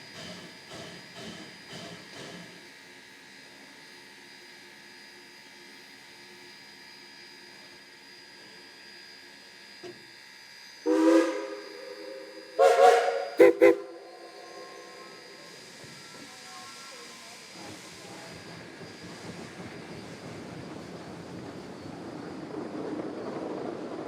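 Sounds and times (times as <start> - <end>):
steam locomotive whistle: 10.8 - 15.7.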